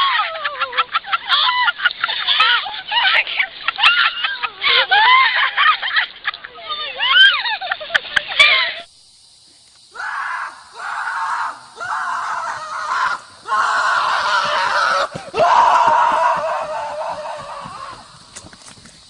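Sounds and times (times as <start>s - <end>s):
loud screams: 0.0s - 5.8s, 6.7s - 7.5s, 9.9s - 18.2s.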